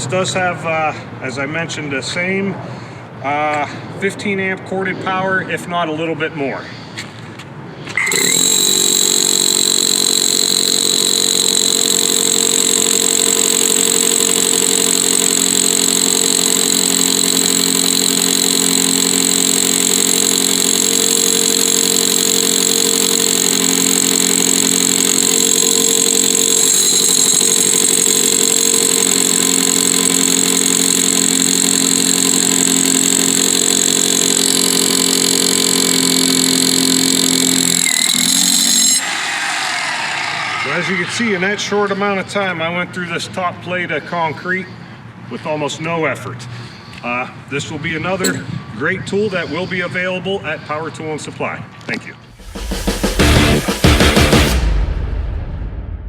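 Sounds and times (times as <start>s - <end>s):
high motor whine: 7.8s - 42.9s, 52.3s - 54.9s
rotary hammer drilling into concrete: 7.9s - 42.0s.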